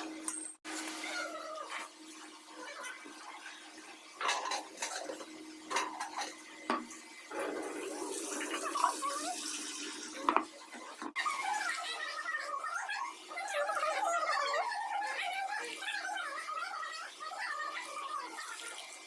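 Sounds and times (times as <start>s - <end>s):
running water: 0.0s - 19.0s
dishes and utensils clinking: 4.1s - 7.8s, 10.2s - 11.2s.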